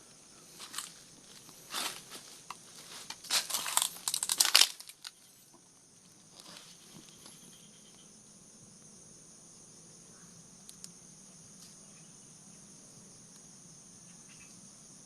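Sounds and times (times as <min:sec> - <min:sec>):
insects chirping: 0:00.0 - 0:15.0
dry leaves crunching underfoot: 0:00.6 - 0:05.2.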